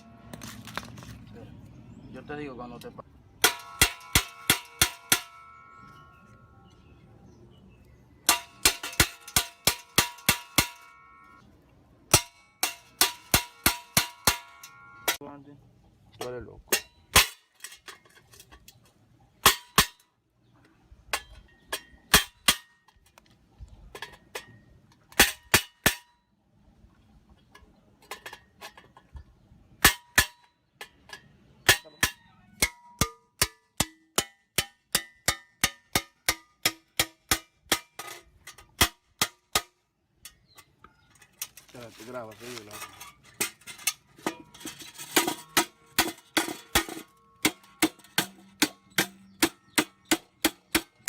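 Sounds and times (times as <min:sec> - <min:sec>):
hammer on hollow steel tank: 0:31.6 - 0:38.0.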